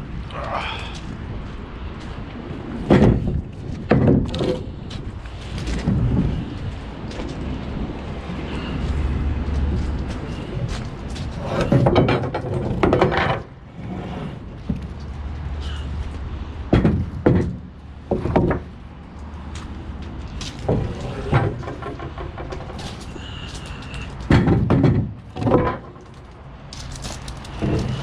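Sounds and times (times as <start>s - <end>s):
sharp knocks and clunks: 2.8s - 7.3s, 9.6s - 15.1s, 16.6s - 18.8s, 19.6s - 26.4s, 27.0s - 28.0s.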